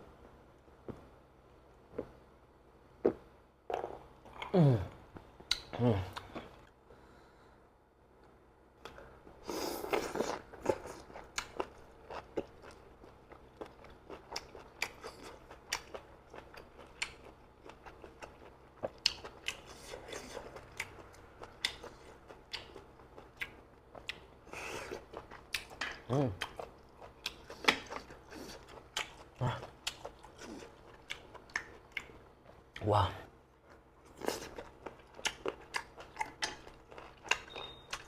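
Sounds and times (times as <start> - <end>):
chewing with clicks and crunches: 8.2 - 38.0.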